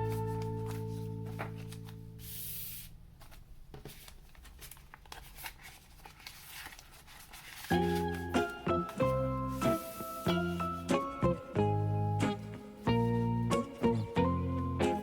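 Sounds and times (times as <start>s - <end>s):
plucked string background music: 0.0s - 2.1s, 7.7s - 15.0s
packaging rustling: 0.0s - 10.1s.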